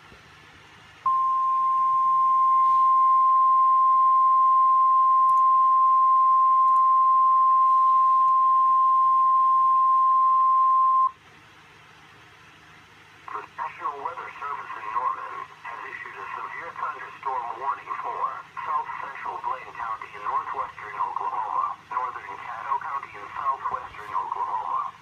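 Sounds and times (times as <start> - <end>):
steady warning alarm tone: 1.1 - 11.1.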